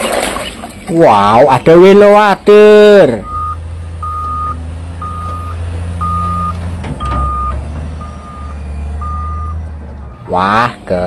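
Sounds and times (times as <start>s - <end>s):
low engine rumble: 0.4s - 11.0s
reversing alarm beeping: 3.1s - 10.3s.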